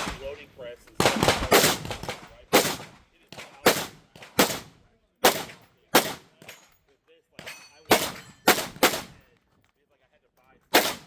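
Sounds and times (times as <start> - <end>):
pistol shots: 0.0 - 0.4, 1.0 - 6.6, 7.4 - 9.2, 10.7 - 11.0.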